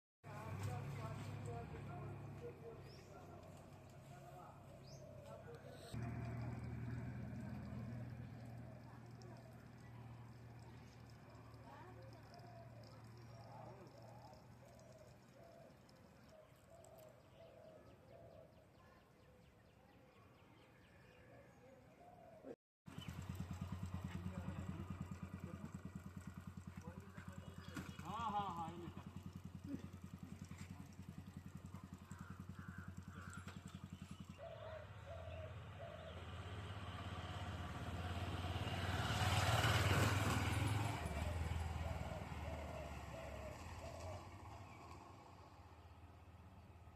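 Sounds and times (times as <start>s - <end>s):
motorcycle passing by: 0.3s - 18.2s, 22.3s - 46.9s
birds cooing: 2.4s - 18.6s, 21.3s - 23.6s, 27.0s - 38.0s, 39.2s - 45.0s
bird calling: 2.7s - 6.1s, 29.0s - 36.4s.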